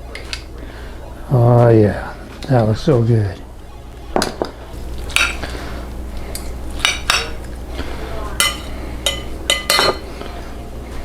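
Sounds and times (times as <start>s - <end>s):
metal utensil clinking on plate: 6.4s - 7.4s, 8.4s - 10.1s.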